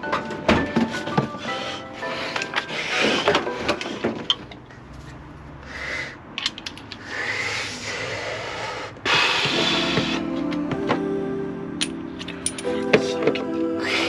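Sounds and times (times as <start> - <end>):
tools scraping metal: 0.2 - 5.2
metal tool clicks: 6.4 - 7.0.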